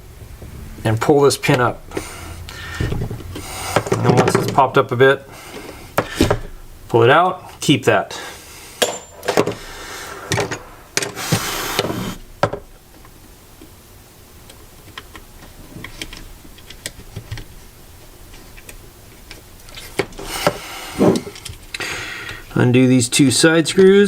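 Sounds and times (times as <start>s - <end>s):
metal parts scraping and knocking: 3.8s - 4.8s.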